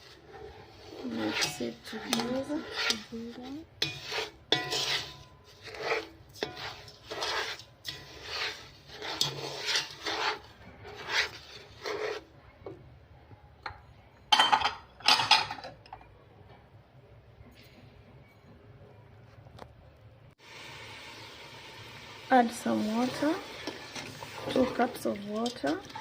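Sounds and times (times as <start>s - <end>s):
sugar scraping in a pot: 0.0s - 12.5s, 22.3s - 26.0s.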